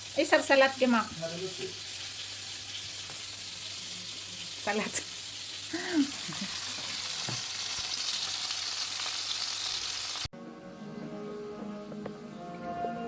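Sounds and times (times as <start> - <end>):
food sizzling in oil: 0.0 - 10.3.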